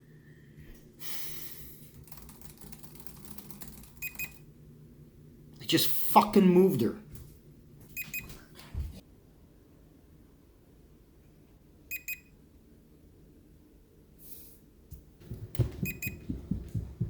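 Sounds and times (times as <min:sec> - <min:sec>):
low thumps: 0:15.2 - 0:17.0.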